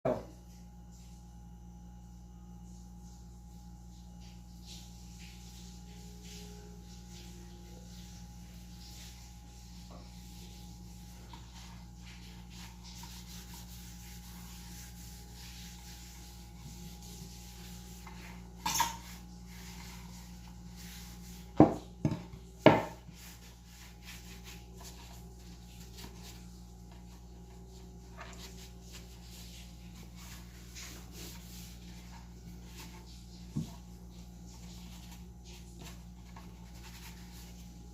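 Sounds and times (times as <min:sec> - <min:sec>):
steady low hum: 0:00.1 - 0:37.9
wood being handled and rubbed: 0:07.8 - 0:37.9.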